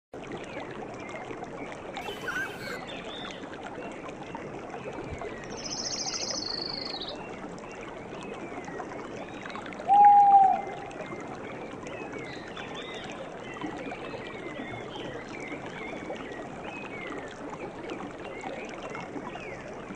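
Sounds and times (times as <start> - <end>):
river water running: 0.2 - 19.9
bird trill: 2.0 - 2.8
birds chirping: 2.0 - 3.0.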